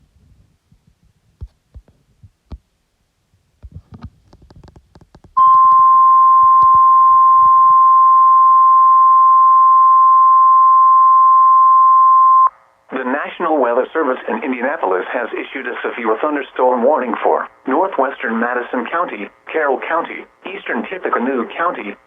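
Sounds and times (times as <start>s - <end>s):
radio noise hiss: 12.9s - 22.0s.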